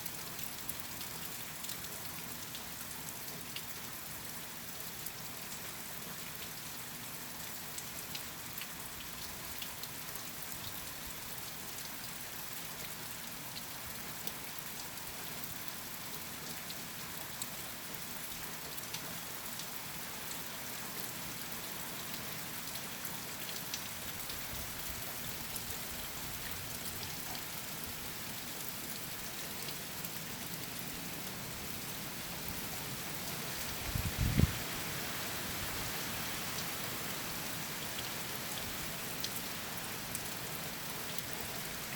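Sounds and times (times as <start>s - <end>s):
heavy rain on hard surface: 0.0s - 41.9s.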